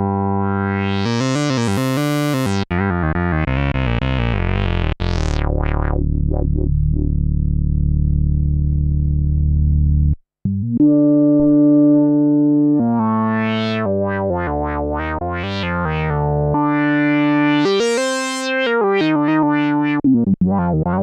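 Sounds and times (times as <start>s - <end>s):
synthesizer filter sweeps: 10.9s - 21.0s
synthesizer held notes: 12.1s - 21.0s.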